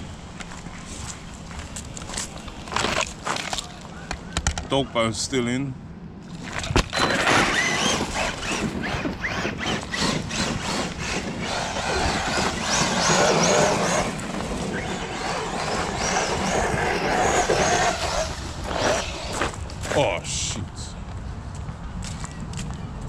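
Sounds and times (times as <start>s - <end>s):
tyre and wind noise: 0.0s - 5.2s, 6.1s - 23.0s
electric motor whining: 7.0s - 19.6s.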